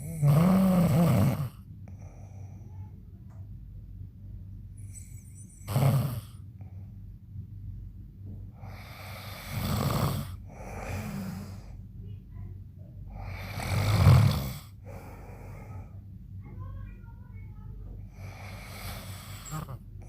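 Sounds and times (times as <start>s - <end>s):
man snoring loudly: 0.0s - 1.6s, 5.7s - 6.3s, 8.7s - 11.5s, 13.2s - 14.7s
quiet breaths: 0.0s - 3.5s, 4.6s - 7.6s, 8.2s - 20.0s.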